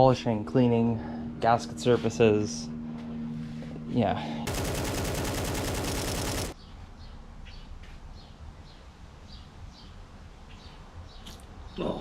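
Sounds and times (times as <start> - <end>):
rapid tool rattle: 4.5 - 6.6.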